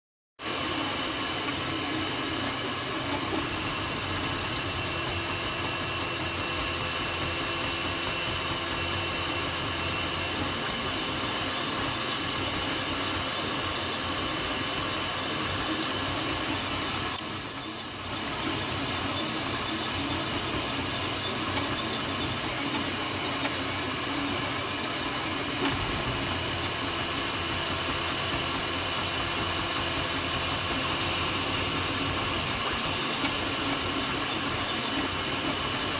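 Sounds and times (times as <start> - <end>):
machine whirring: 0.4 - 35.9.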